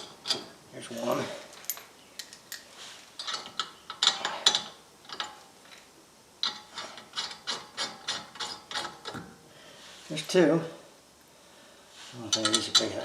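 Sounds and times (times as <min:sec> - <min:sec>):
metal hardware clinking: 0:00.0 - 0:05.8, 0:12.3 - 0:13.0.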